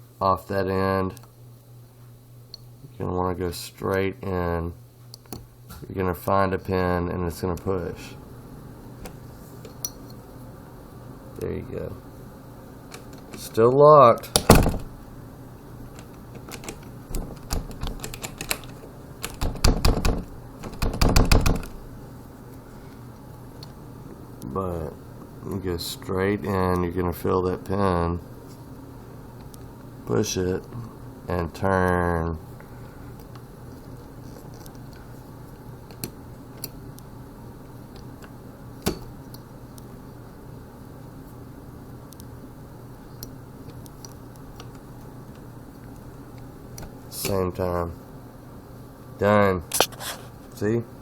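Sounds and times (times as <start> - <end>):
doorknob lock rattling and clicking: 12.9 - 13.5, 14.3 - 15.0, 15.9 - 21.8.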